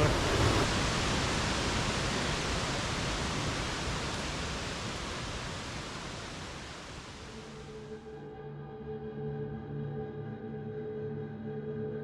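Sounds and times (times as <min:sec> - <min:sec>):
waterfall rushing: 0:00.0 - 0:07.6.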